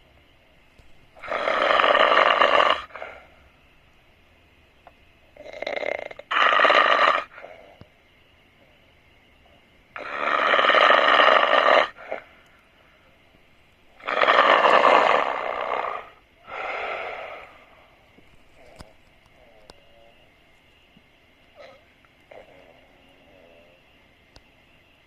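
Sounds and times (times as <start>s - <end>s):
quiet breathing: 11.9s - 14.0s, 16.1s - 20.5s.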